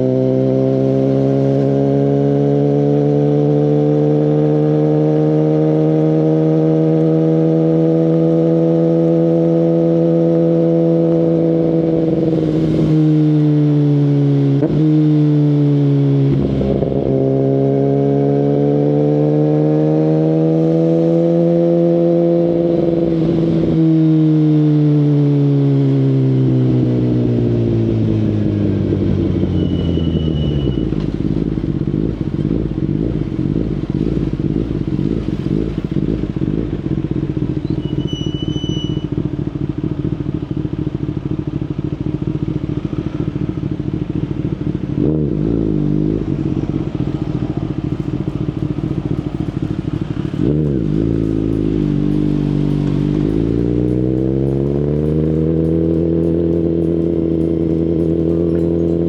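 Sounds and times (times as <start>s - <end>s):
motorcycle engine running and idling: 22.5s - 59.0s.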